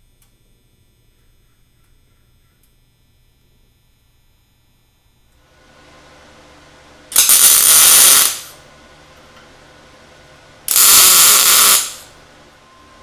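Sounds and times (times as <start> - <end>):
low machine hum: 0.0 - 13.0
welding arc crackling: 7.1 - 8.6, 10.7 - 12.1.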